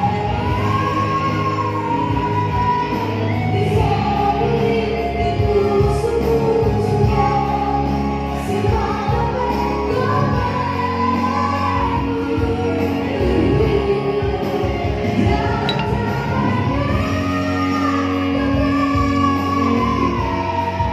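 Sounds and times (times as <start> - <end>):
singing over instrumental music: 0.0 - 20.9.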